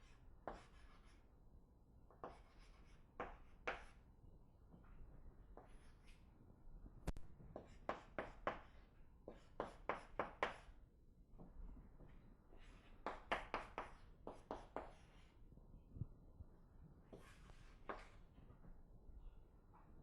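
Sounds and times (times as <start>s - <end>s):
chalk scratching on board: 0.0s - 1.2s, 2.2s - 4.0s, 5.6s - 6.2s, 7.6s - 10.8s, 12.6s - 15.4s, 17.1s - 18.2s.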